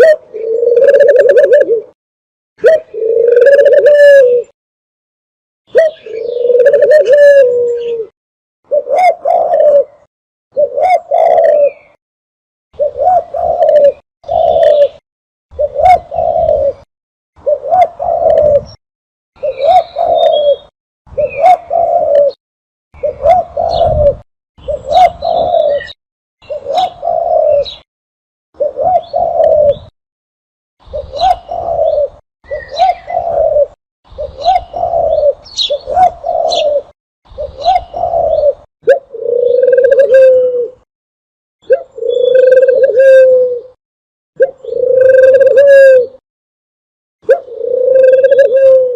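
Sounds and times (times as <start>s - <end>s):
dove cooing: 0.0s - 2.0s, 2.6s - 4.6s, 5.7s - 8.1s, 8.7s - 12.0s, 12.8s - 18.8s, 19.4s - 22.4s, 23.0s - 27.8s, 28.6s - 29.9s, 30.8s - 40.8s, 41.6s - 43.8s, 44.4s - 46.2s, 47.3s - 48.9s
small birds chirping: 5.7s - 6.6s, 24.6s - 27.9s, 30.8s - 33.5s, 34.1s - 39.8s, 41.6s - 42.7s.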